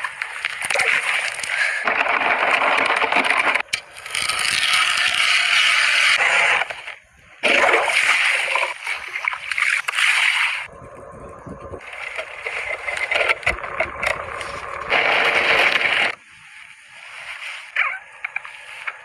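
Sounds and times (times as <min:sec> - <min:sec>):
water splashing and sloshing: 0:00.0 - 0:10.7, 0:11.8 - 0:19.0.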